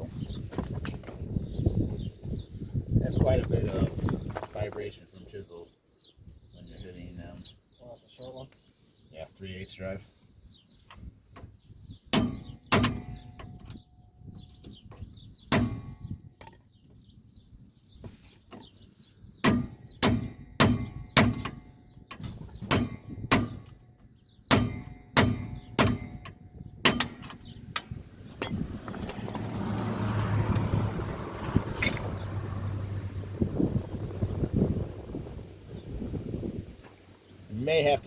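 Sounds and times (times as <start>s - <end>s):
hammer striking chisel on metal: 12.1s - 13.6s, 15.5s - 16.0s, 19.4s - 21.6s, 22.7s - 23.7s, 24.5s - 28.6s.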